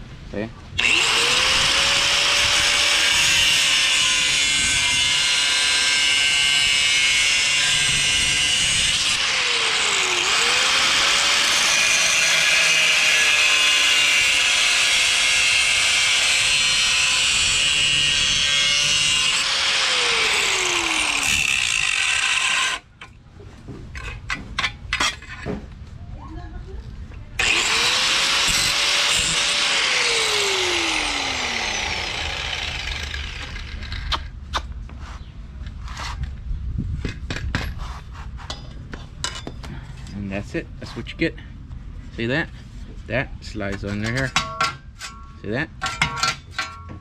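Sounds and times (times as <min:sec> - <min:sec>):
power tool cutting metal: 0:00.8 - 0:22.9, 0:27.4 - 0:34.2.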